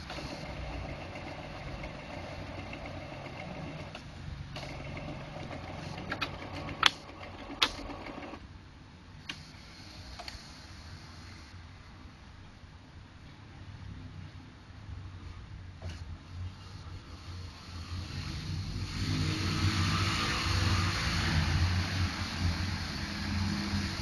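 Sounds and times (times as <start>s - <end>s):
inkjet printer mechanism running: 0.0s - 8.4s, 9.3s - 11.5s
sharp clicks: 5.7s - 8.2s.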